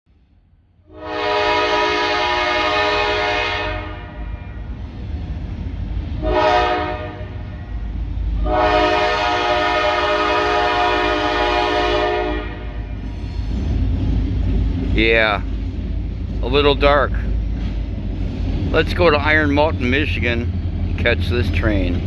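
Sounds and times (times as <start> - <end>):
passing train rumble: 0.1 - 22.0
locomotive air horn: 0.9 - 4.4, 6.2 - 7.5, 8.4 - 12.9.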